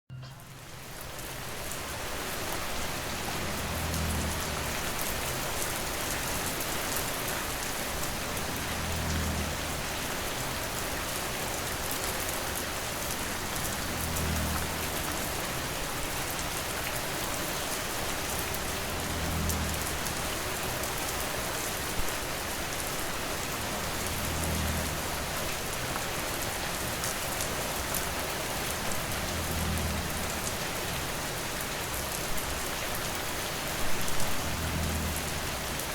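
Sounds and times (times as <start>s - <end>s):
rain falling on surfaces: 0.1s - 35.9s
sharp raindrop: 0.1s - 35.9s.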